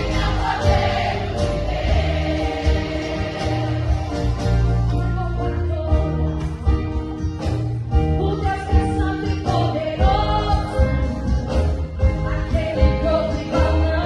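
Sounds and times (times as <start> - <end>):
band with bass and beat: 0.0 - 14.0
woman singing: 8.1 - 11.2, 12.0 - 14.0.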